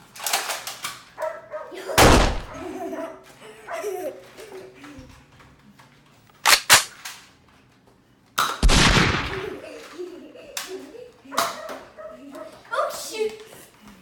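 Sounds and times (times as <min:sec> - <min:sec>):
sharp cracks: 0:02.0 - 0:02.6, 0:06.4 - 0:07.1, 0:08.4 - 0:09.6
bang with rumble: 0:02.0 - 0:02.7, 0:08.6 - 0:09.6.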